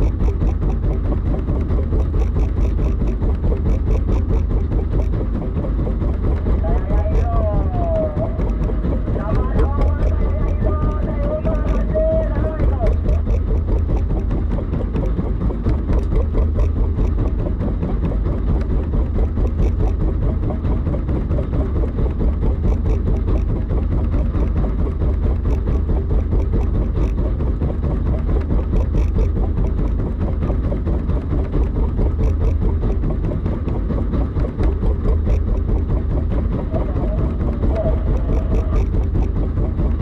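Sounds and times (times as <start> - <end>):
faint irregular ticks: 0.0 - 5.2, 6.6 - 18.7, 19.3 - 20.0, 22.5 - 24.6, 25.3 - 27.2, 28.2 - 30.0, 31.6 - 33.8, 34.6 - 35.9, 37.7 - 39.4
boat engine rumbling: 0.0 - 40.0.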